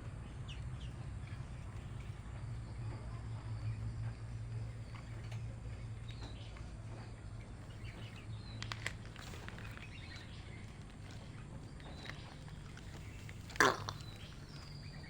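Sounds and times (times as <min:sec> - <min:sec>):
woodpecker chirping: 0:11.9 - 0:15.0.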